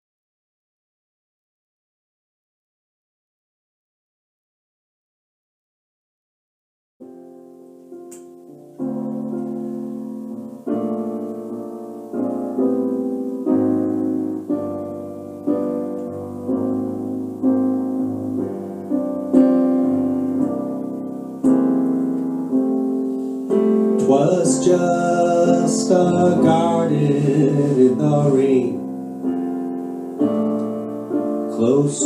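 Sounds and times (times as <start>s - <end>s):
slow jazz piano chords: 7.0s - 32.0s.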